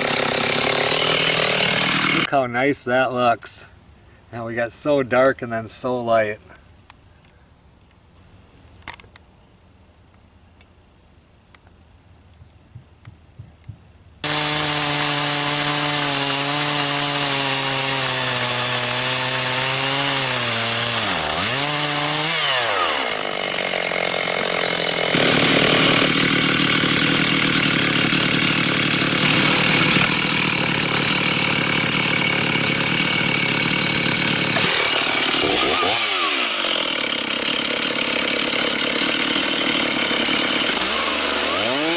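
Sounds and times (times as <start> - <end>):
chainsaw cutting log: 0.0 - 2.3, 14.2 - 41.9.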